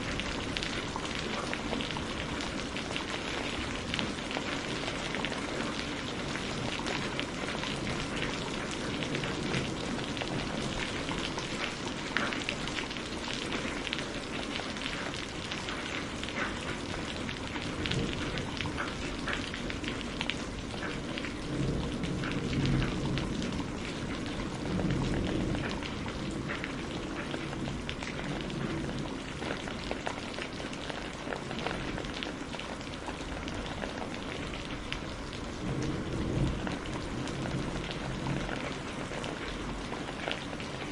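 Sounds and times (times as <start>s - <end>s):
heavy rain falling: 0.0s - 40.9s
thunder rumbling: 16.9s - 40.9s.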